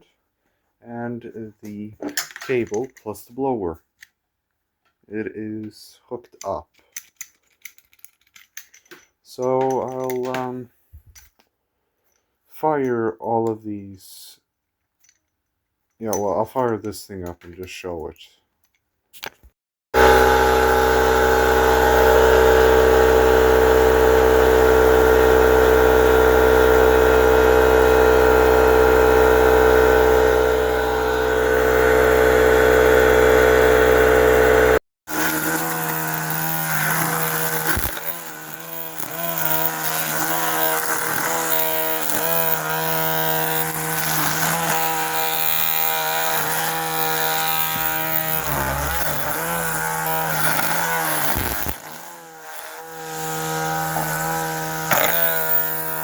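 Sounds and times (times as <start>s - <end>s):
machine with wavering pitch: 20.0s - 34.8s
air compressor humming: 20.0s - 56.0s.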